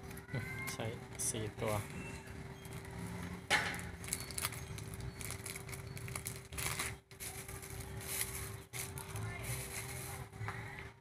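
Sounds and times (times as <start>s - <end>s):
electronic parts rustling: 3.7s - 10.3s.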